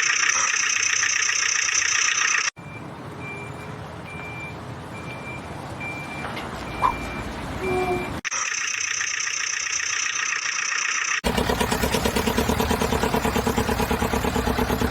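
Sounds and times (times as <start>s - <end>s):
reversing beep: 2.6s - 8.2s
engine idling with rapid chug: 10.8s - 14.9s.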